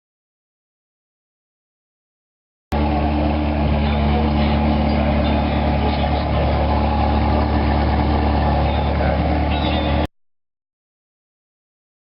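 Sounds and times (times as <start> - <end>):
vehicle engine idling: 2.7 - 10.1.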